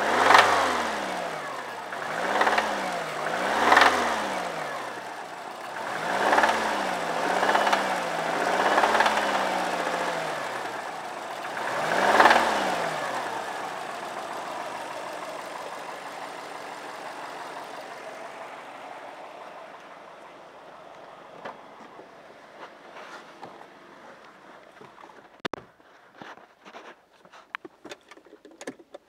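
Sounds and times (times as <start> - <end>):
engine knocking and rattling: 0.0 - 22.8
car engine revving in blips: 0.0 - 25.6.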